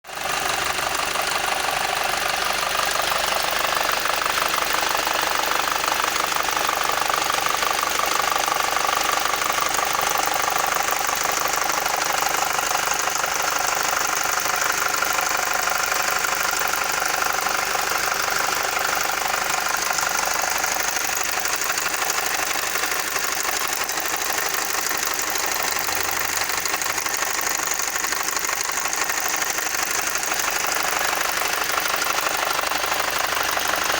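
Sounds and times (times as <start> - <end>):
car engine running: 0.1 - 33.9
fast ticking clatter: 0.1 - 33.9.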